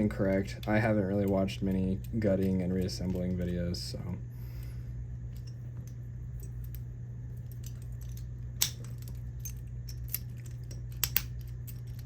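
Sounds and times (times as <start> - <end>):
steady low hum: 0.0 - 12.0
padlock metallic clicks and taps: 7.5 - 12.0.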